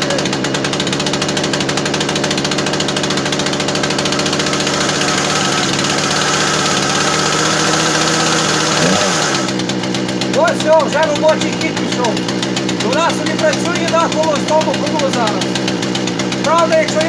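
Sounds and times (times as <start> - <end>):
chainsaw fast idle: 0.0 - 17.0.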